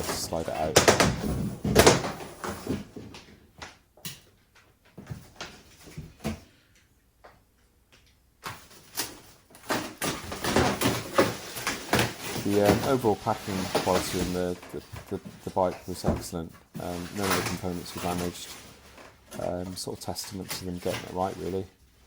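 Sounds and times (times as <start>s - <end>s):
packaging rustling: 8.6s - 21.7s.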